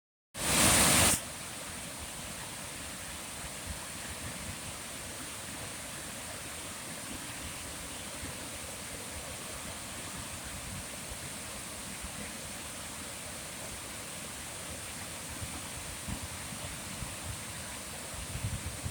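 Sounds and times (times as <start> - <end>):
thin high hiss: 0.4 - 1.3
rushing nature ambience: 0.4 - 18.9.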